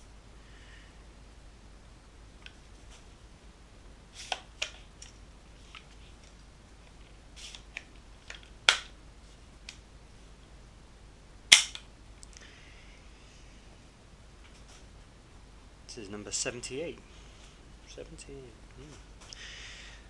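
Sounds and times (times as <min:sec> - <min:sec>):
airsoft rifle metallic clicks: 0:11.5 - 0:11.9.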